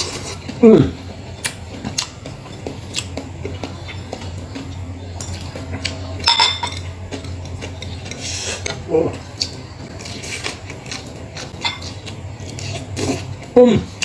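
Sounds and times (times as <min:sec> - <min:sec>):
person humming: 0:00.6 - 0:01.0
cutlery clinking on a plate: 0:05.2 - 0:08.2, 0:11.6 - 0:12.0.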